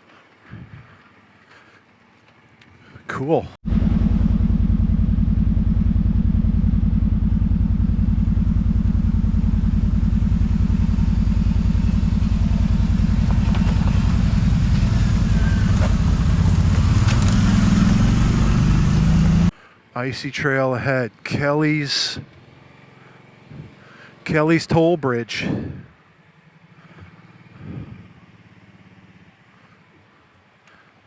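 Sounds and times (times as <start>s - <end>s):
engine running: 3.6s - 19.6s.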